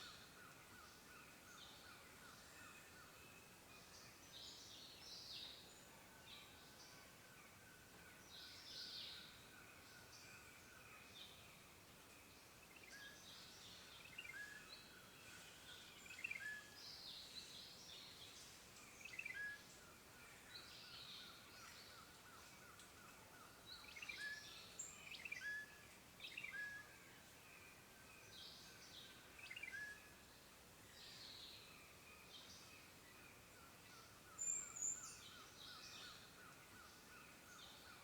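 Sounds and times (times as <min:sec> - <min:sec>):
faint steady hiss: 0:00.0 - 0:38.0
songbirds singing: 0:12.2 - 0:38.0.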